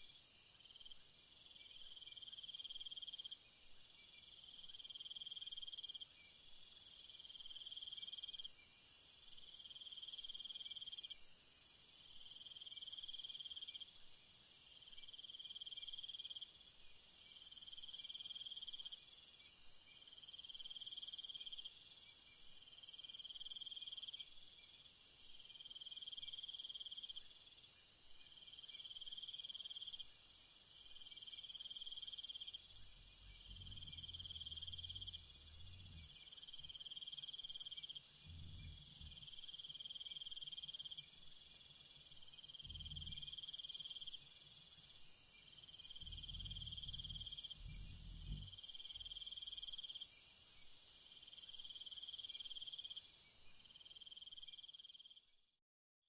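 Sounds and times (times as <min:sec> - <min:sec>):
crickets chirping: 0:00.0 - 0:55.4
faint low rumbles: 0:32.8 - 0:36.2, 0:38.2 - 0:39.4, 0:45.9 - 0:48.7.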